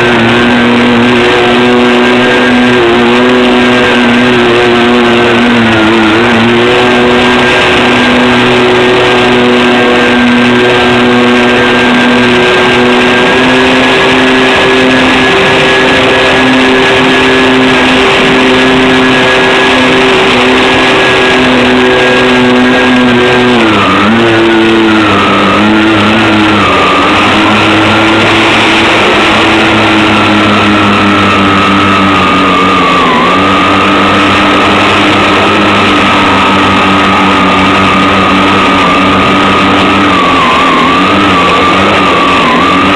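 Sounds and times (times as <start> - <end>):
electric motors and propellers whining: 0.0 - 42.9.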